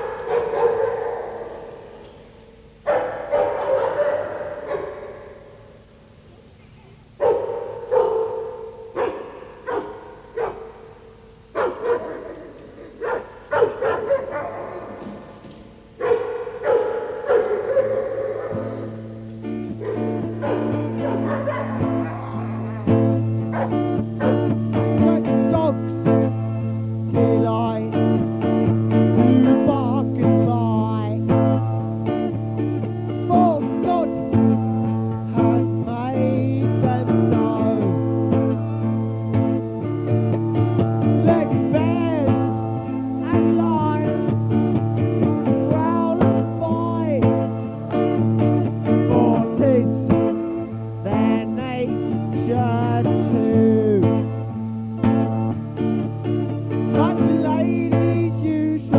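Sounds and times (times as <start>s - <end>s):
dog barking: 0.0s - 2.0s, 2.8s - 5.8s, 7.2s - 15.4s, 16.0s - 25.7s
plucked guitar: 0.0s - 58.9s.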